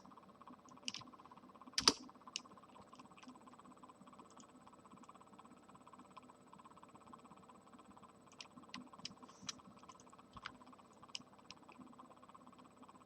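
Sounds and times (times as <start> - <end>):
faint electrical hum: 0.0 - 13.0
mouse and keyboard clicks: 1.8 - 3.4, 8.3 - 11.8.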